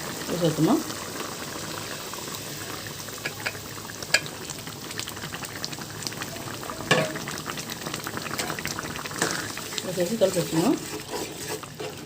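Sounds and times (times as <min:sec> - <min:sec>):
gravy bubbling and sizzling: 0:00.0 - 0:12.0
spoon knocking against pan: 0:06.9 - 0:07.2.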